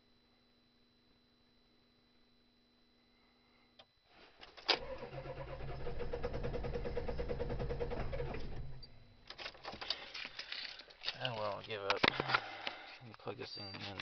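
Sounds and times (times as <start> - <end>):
car starter cranking: 4.6 - 10.2.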